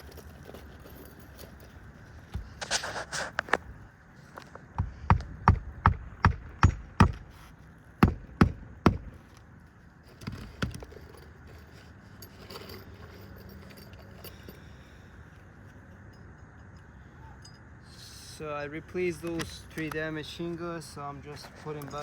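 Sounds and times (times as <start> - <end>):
hammer striking nails: 4.8 - 7.4, 8.0 - 9.2.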